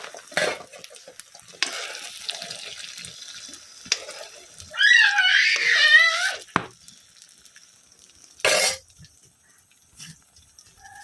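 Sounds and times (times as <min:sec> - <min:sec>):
food sizzling in a pan: 0:00.0 - 0:11.0.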